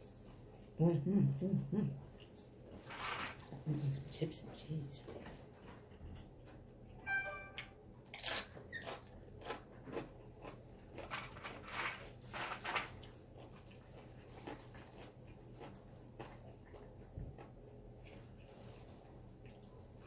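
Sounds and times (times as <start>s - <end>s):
crunching chips: 8.1s - 17.5s.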